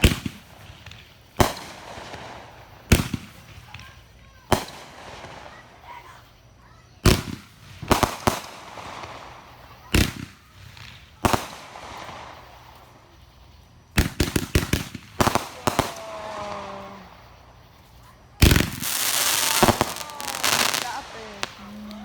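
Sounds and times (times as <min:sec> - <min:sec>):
fireworks bangs with echo: 0:00.0 - 0:13.2, 0:13.9 - 0:22.0.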